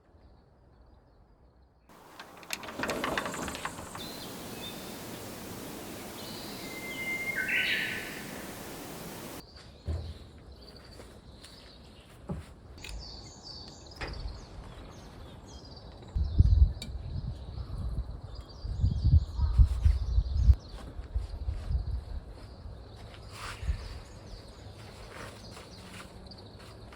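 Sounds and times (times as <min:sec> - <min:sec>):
dull knocks: 0:01.9 - 0:09.4
high bird chirps: 0:01.9 - 0:09.4
scattered clicks: 0:01.9 - 0:09.4
steady hiss: 0:01.9 - 0:09.4.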